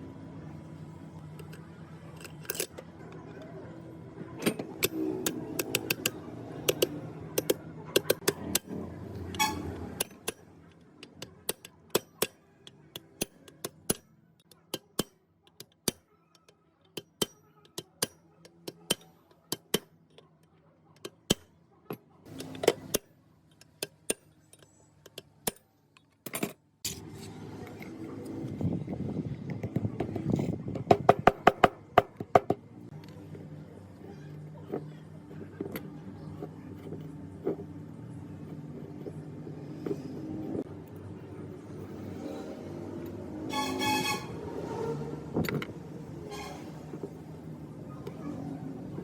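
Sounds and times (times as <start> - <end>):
metal parts and tools clinking: 1.4 - 3.6, 4.4 - 27.9.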